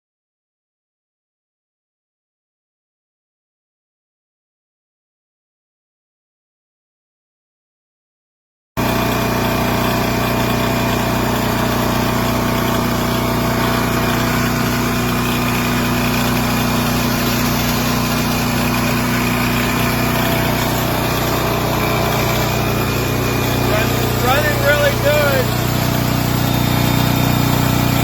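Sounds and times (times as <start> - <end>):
generator engine droning: 8.8 - 28.0.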